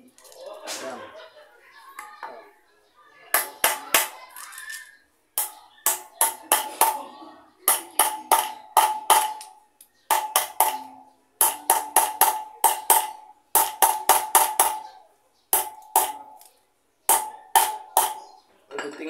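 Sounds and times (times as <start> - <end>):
hammer striking metal: 3.4 - 4.2, 5.4 - 7.0, 7.7 - 14.9, 15.5 - 16.5, 17.1 - 18.4.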